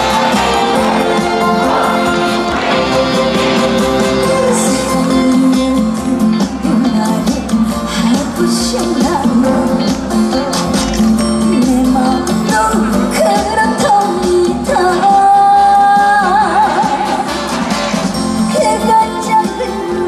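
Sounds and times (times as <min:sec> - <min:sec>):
amplified backing music: 0:00.0 - 0:20.0
woman singing: 0:03.0 - 0:10.6, 0:11.4 - 0:17.3, 0:18.4 - 0:20.0.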